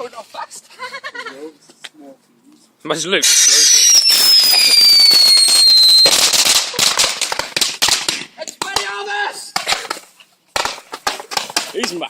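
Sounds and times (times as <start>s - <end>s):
firework whistling: 3.2s - 8.0s
firecracker pops crackling: 3.2s - 12.0s.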